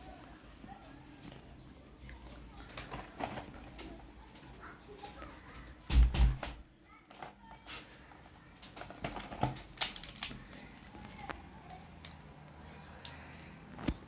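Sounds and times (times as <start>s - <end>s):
small objects clicking and tapping: 7.0s - 12.2s.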